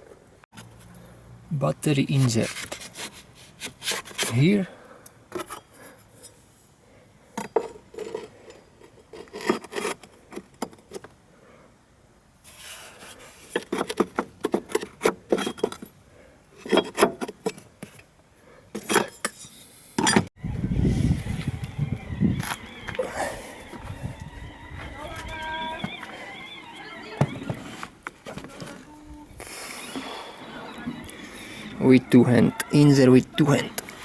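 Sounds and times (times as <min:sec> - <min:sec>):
car battery knocking and scraping: 0:27.2 - 0:28.8.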